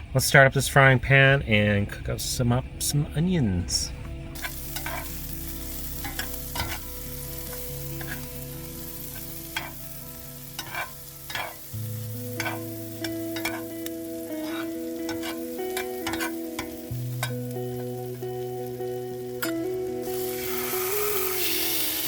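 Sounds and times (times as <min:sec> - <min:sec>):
onions sizzling in a frying pan: 0:04.3 - 0:22.0
utensil scraping and tapping pan: 0:04.4 - 0:05.1, 0:06.0 - 0:06.9, 0:08.0 - 0:08.3, 0:10.6 - 0:11.6, 0:12.4 - 0:13.7, 0:14.4 - 0:17.4.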